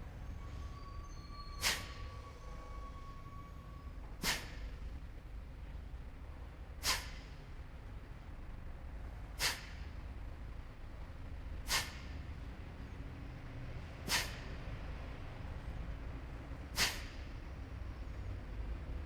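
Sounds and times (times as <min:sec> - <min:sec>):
steady low hum: 0:00.0 - 0:19.0
forceful nasal exhalations: 0:01.6 - 0:02.0, 0:04.2 - 0:04.6, 0:06.8 - 0:07.3, 0:09.4 - 0:09.8, 0:11.7 - 0:12.1, 0:14.0 - 0:14.5, 0:16.7 - 0:17.2.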